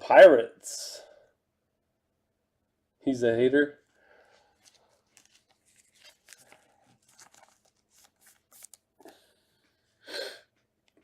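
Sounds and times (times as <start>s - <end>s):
plastic sleeves rustling and crinkling: 4.2s - 9.3s.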